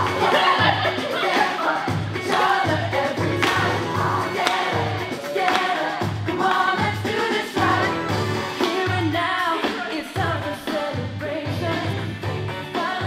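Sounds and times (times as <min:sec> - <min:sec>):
steady bass beat: 0:00.0 - 0:09.3
pop song with singing: 0:00.0 - 0:13.0.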